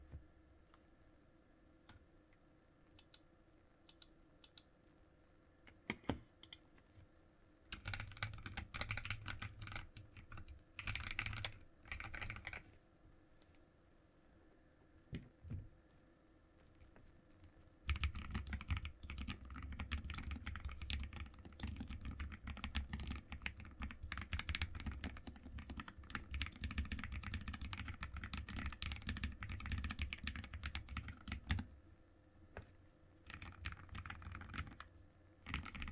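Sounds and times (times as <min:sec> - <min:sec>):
typing on a mechanical keyboard: 0:07.7 - 0:12.6, 0:17.9 - 0:31.7, 0:33.3 - 0:35.9.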